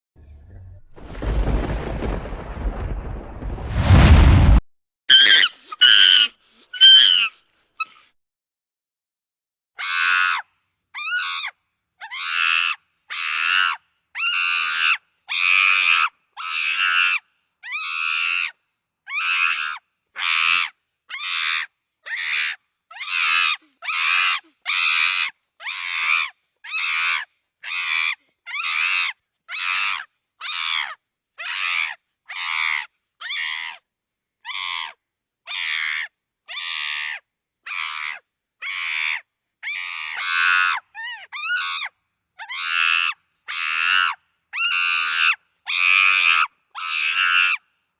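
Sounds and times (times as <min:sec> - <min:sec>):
chimpanzee screaming: 0:05.1 - 0:08.0.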